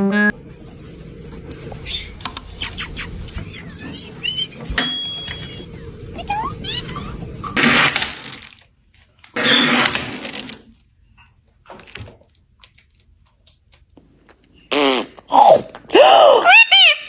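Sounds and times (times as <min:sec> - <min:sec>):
parrot squawking: 0:01.8 - 0:04.8, 0:05.5 - 0:07.2.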